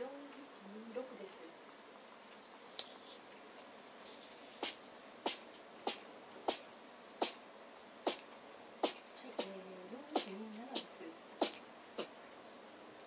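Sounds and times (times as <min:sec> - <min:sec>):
cat sneezing: 0:04.6 - 0:06.6, 0:08.8 - 0:09.5, 0:11.4 - 0:12.1.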